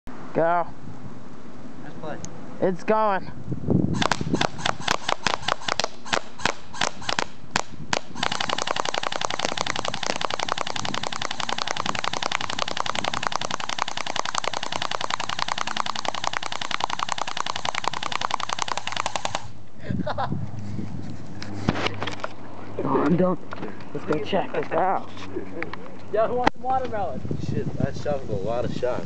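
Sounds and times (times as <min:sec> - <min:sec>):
airsoft rifle full-auto burst: 0:04.0 - 0:07.3, 0:08.0 - 0:19.6
airsoft gun single shots: 0:04.0 - 0:19.5.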